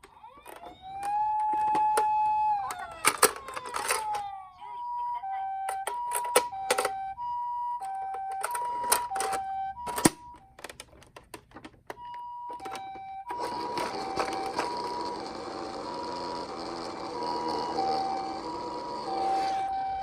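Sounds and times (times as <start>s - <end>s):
plastic clacks and knocks: 0.0s - 4.3s, 7.8s - 14.7s
plastic wheels rattling: 0.0s - 4.3s, 12.6s - 20.0s
toy two-tone siren: 0.0s - 10.6s, 11.9s - 20.0s.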